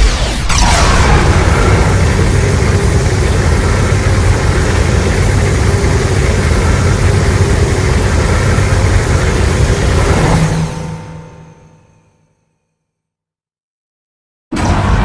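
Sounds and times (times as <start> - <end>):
loud low rumble: 0.5 - 12.1.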